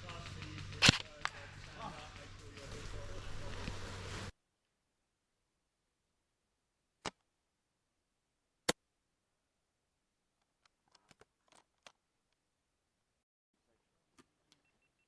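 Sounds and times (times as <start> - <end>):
sharp clicks: 0.0 - 1.5.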